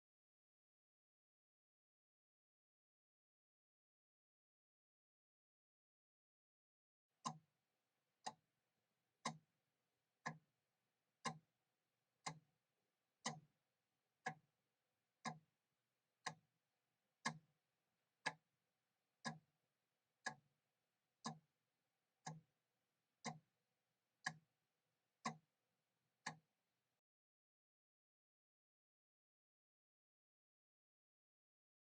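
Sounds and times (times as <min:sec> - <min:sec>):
mechanical clock ticking: 0:11.2 - 0:11.4, 0:12.2 - 0:12.4, 0:13.2 - 0:13.5, 0:15.2 - 0:15.4, 0:17.2 - 0:17.4, 0:19.2 - 0:19.4, 0:20.2 - 0:20.4, 0:21.2 - 0:21.4, 0:22.2 - 0:22.4, 0:23.2 - 0:23.4, 0:24.2 - 0:24.4.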